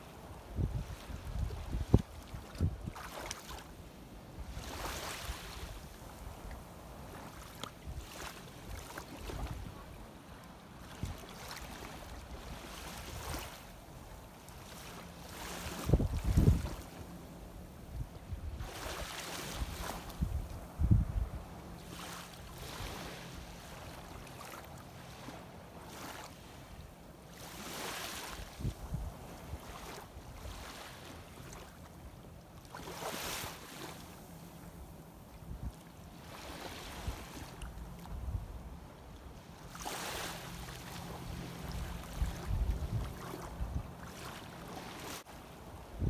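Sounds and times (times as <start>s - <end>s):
wind on microphone: 0.3s - 3.1s, 15.5s - 17.0s, 17.8s - 21.5s, 28.5s - 30.6s, 35.5s - 35.8s, 36.8s - 38.8s, 41.1s - 44.2s, 45.7s - 46.0s
sea water sloshing: 39.4s - 45.8s.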